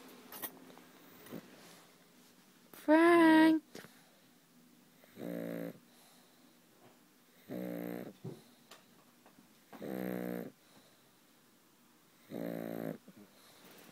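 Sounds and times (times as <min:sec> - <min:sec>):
dog snoring: 0:05.0 - 0:06.3, 0:07.3 - 0:08.5, 0:09.7 - 0:10.8, 0:12.2 - 0:13.6.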